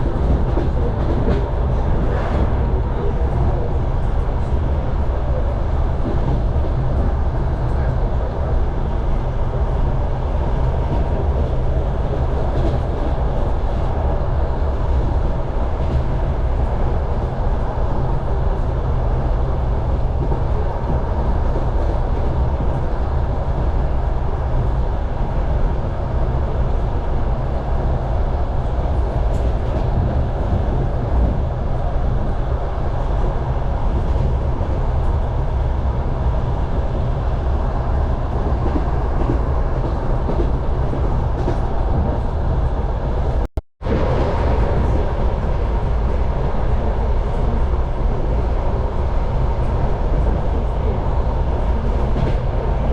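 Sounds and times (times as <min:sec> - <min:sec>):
train wheels clattering on track: 0:00.0 - 0:09.3, 0:10.6 - 0:14.1, 0:29.0 - 0:31.4, 0:38.3 - 0:42.3, 0:49.7 - 0:52.9.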